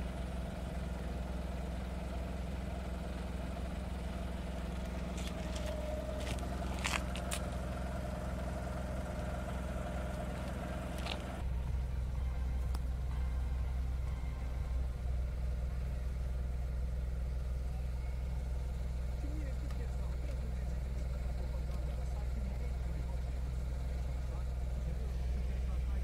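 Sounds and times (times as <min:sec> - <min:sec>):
car engine idling: 0:00.0 - 0:26.0.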